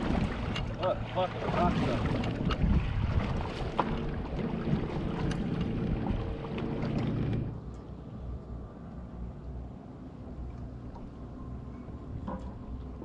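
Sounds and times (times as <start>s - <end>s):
motorboat engine running: 0.0s - 13.0s
wind on microphone: 1.4s - 7.5s.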